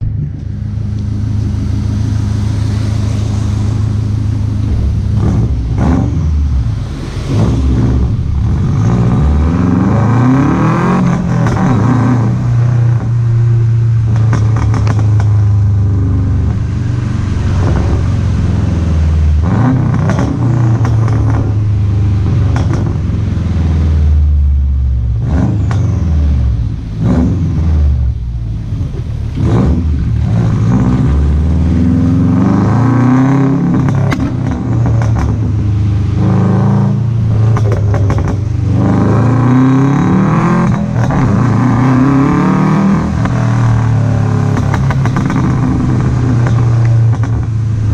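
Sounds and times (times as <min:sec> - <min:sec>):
engine revving with rumbling exhaust: 0:00.0 - 0:47.9.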